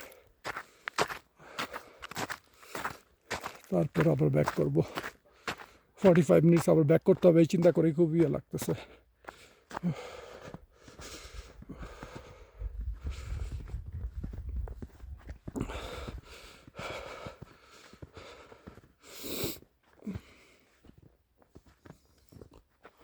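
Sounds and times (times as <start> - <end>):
person breathing hard: 0.0 - 3.1, 4.9 - 6.0, 8.8 - 14.0, 15.4 - 20.9
wind buffeting microphone: 12.3 - 16.2.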